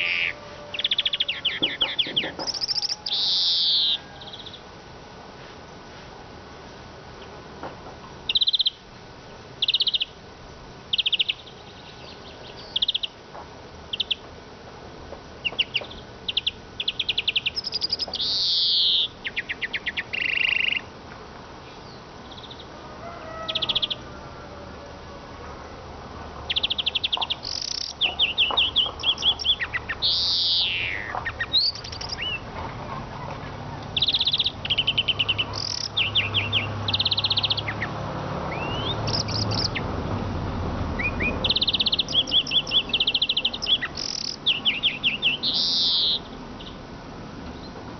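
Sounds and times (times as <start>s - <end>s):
bird chirps and trills: 0.0s - 4.6s, 8.3s - 8.8s, 9.6s - 10.2s, 10.9s - 13.2s, 13.9s - 14.2s, 15.4s - 20.9s, 21.7s - 24.1s, 26.5s - 32.5s, 33.1s - 39.9s, 41.0s - 46.8s.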